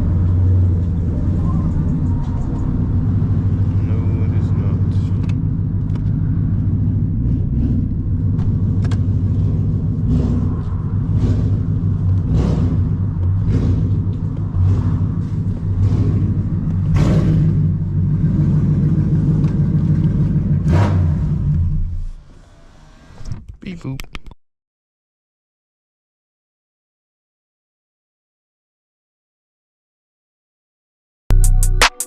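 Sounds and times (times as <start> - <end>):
car engine rumbling: 0.0 - 24.0.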